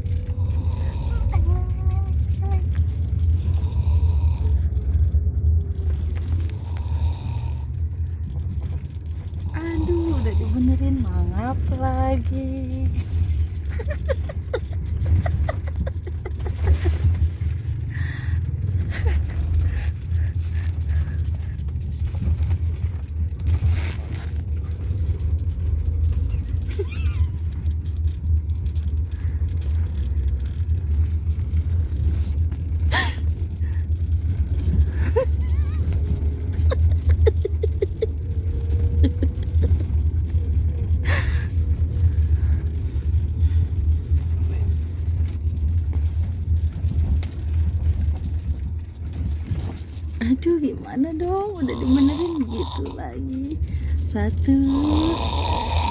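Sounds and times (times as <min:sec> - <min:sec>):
car cabin rumble: 0:00.0 - 0:54.7
child snoring: 0:00.3 - 0:01.7, 0:03.4 - 0:04.7, 0:06.5 - 0:07.7, 0:51.6 - 0:53.1, 0:54.6 - 0:55.9.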